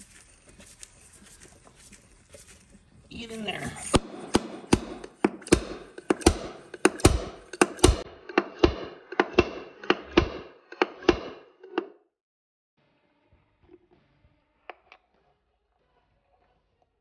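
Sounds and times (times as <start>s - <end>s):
slide hammer metal impacts: 4.0s - 12.0s.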